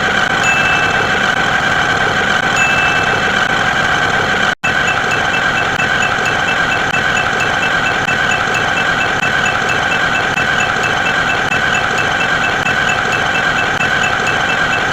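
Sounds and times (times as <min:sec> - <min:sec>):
loud mechanical drone: 0:00.0 - 0:14.9
faint high-pitched beeps: 0:00.4 - 0:01.2, 0:02.6 - 0:03.3, 0:04.6 - 0:14.9.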